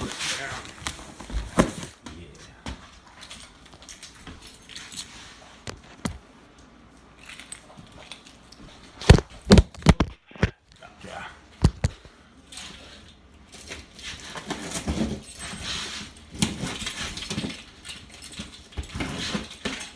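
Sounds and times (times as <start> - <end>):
quiet handling noise: 0.0 - 4.8
cardboard box thump: 1.2 - 2.0.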